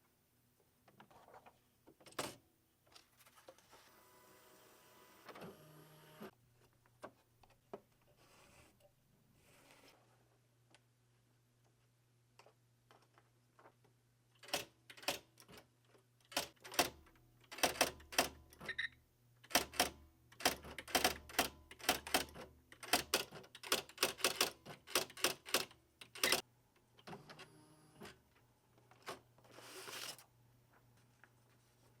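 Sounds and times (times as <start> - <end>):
typewriter keys typing: 14.4 - 15.3, 16.3 - 18.4, 19.5 - 26.4.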